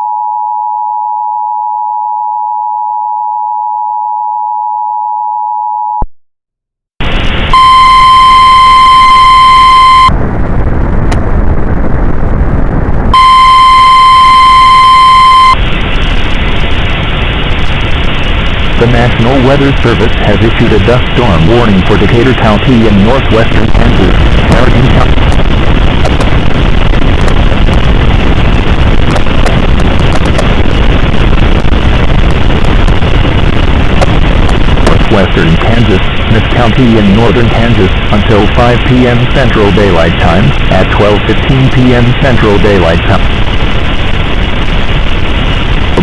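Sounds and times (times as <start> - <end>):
hissing static: 7.0 - 46.0
crackling clicks: 10.1 - 13.1, 23.6 - 35.2.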